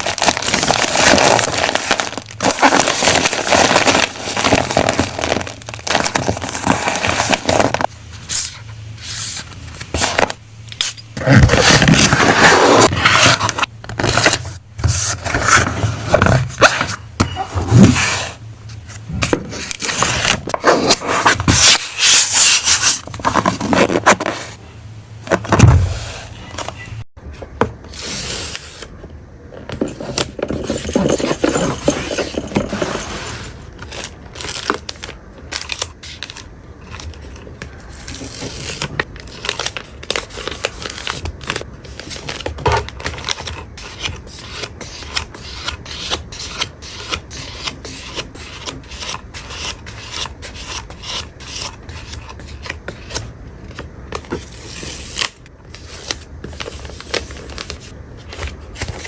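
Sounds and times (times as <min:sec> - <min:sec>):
scraping and rubbing: 0:11.2 - 0:24.6.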